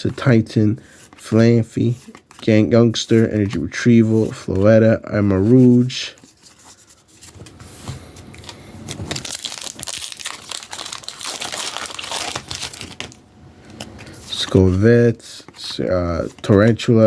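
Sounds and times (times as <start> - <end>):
foil wrapper crinkling: 8.4 - 13.2.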